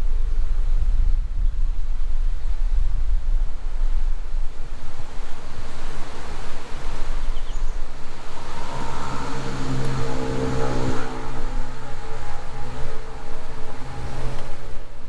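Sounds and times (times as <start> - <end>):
wind and road noise: 0.0 - 15.0
car engine: 4.6 - 15.0.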